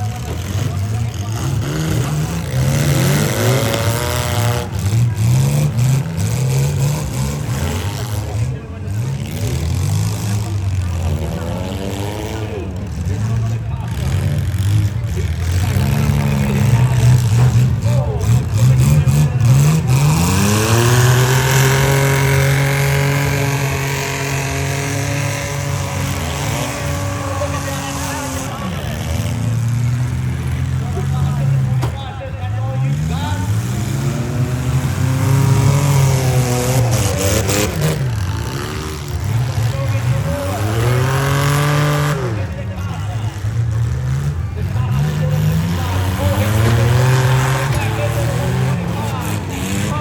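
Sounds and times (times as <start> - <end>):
car engines revving: 0.0 - 50.0.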